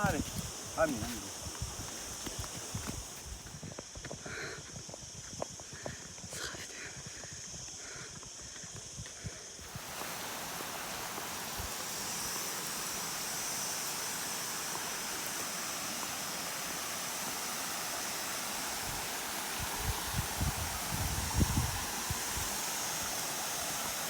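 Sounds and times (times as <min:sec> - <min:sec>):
fast-flowing water rushing: 0:00.0 - 0:03.5, 0:09.6 - 0:24.0.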